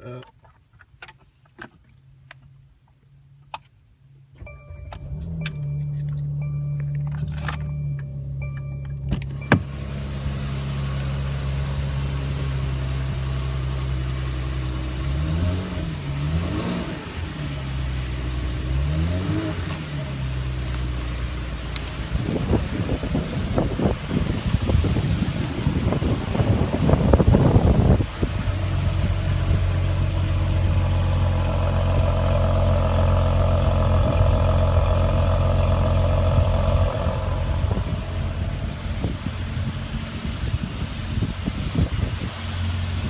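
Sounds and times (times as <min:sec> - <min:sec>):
car engine starting and idling: 0:00.0 - 0:43.0
engine throttle blips: 0:04.3 - 0:43.0
electronic chime: 0:04.4 - 0:09.7.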